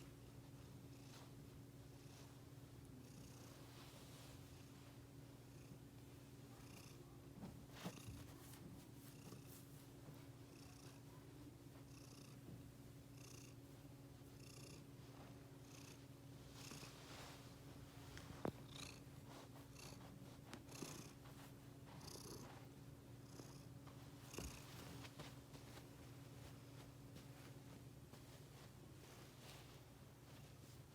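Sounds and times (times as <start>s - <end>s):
cat purring: 15.6s - 25.2s.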